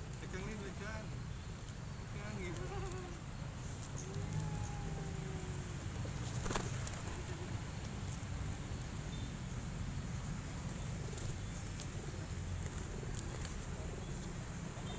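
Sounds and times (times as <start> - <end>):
steady outdoor rumble: 0.0 - 14.9
pigeons cooing: 1.5 - 8.1, 10.5 - 14.9.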